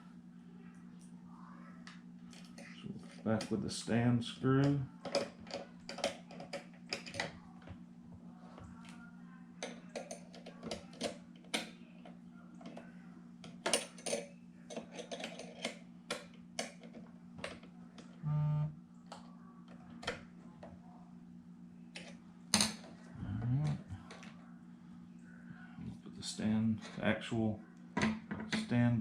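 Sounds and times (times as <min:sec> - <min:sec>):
steady low hum: 0:17.1 - 0:19.6, 0:20.2 - 0:29.0
short pitched tone: 0:18.2 - 0:18.8.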